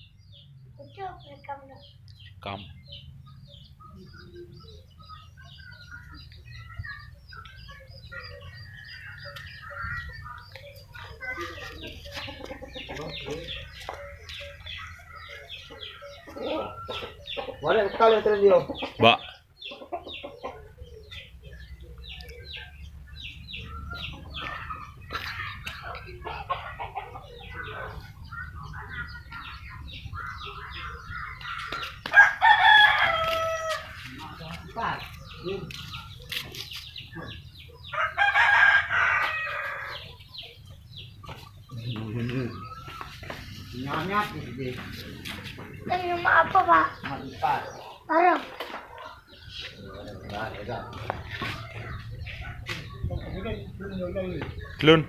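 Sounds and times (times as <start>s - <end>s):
birds clucking and chirping: 0.0s - 55.0s
rooster crowing: 32.1s - 34.0s, 37.9s - 40.2s.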